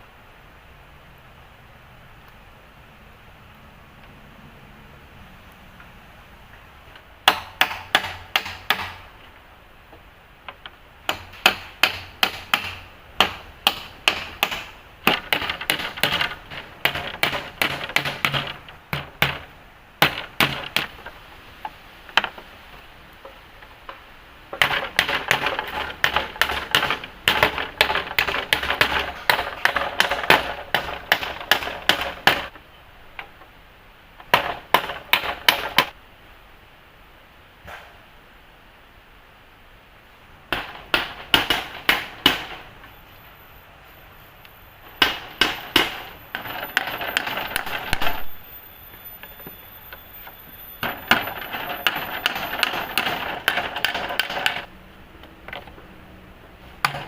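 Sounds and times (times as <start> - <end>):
tool striking wood: 7.2 - 9.1, 11.1 - 21.2, 23.2 - 32.6, 34.3 - 35.9, 40.5 - 42.7, 45.0 - 48.2, 50.8 - 54.7, 56.8 - 57.0.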